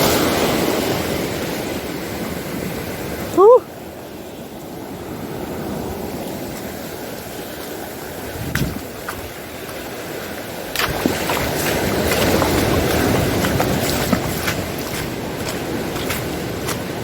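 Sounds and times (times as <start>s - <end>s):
sea surf: 0.0s - 17.0s
wind buffeting the microphone: 4.2s - 17.0s.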